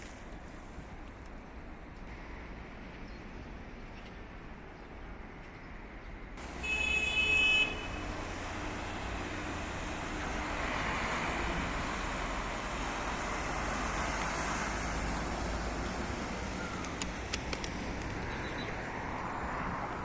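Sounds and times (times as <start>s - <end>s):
locomotive horn blast: 6.4s - 9.4s.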